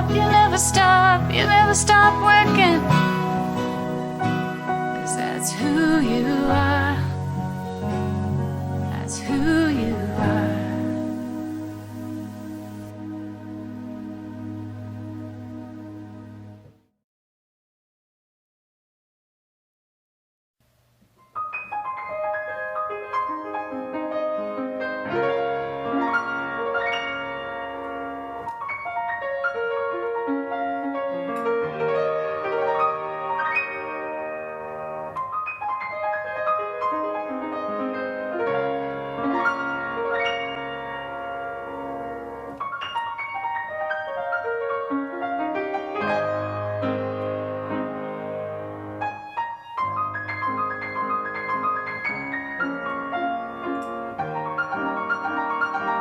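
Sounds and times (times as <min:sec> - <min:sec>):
solo piano chords: 0:00.0 - 0:16.8, 0:21.2 - 0:56.0.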